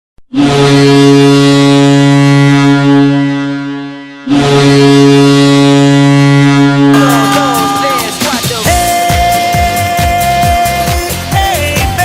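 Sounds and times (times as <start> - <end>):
goal horn blasts: 0.3 - 8.7.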